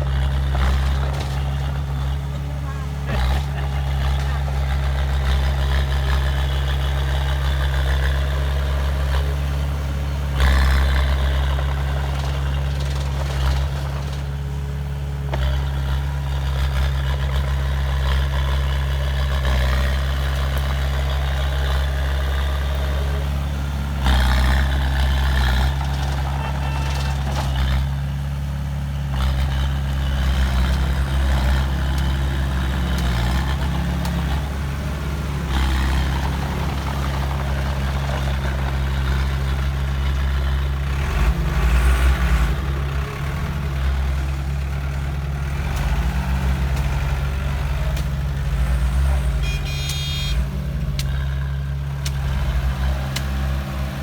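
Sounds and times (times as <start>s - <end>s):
heavy diesel engine running: 0.0s - 54.0s.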